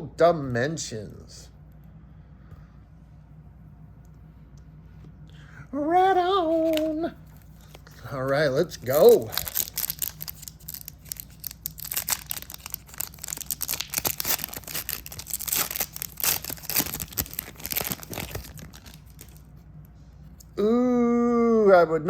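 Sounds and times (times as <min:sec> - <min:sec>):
wrapper crinkling: 0:06.2 - 0:19.6
foil card pack tearing: 0:06.4 - 0:19.5.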